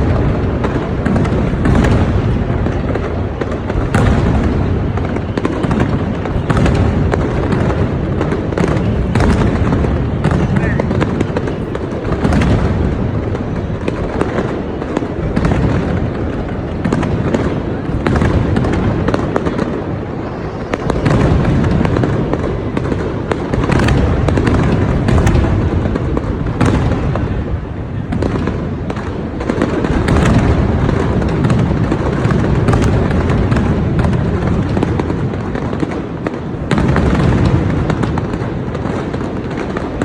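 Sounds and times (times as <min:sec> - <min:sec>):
fireworks booming: 0:00.0 - 0:40.0
fireworks crackling pops: 0:00.0 - 0:40.0.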